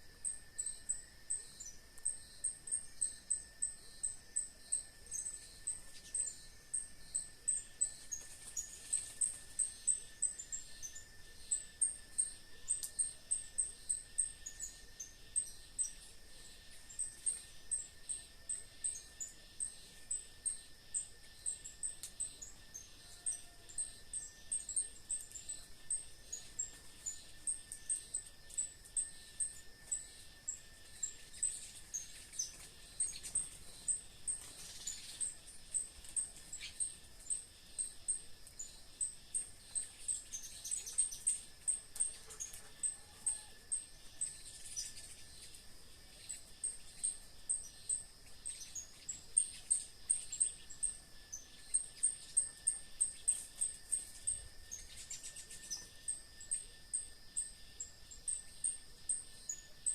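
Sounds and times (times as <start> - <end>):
high insect drone: 0.0 - 59.9.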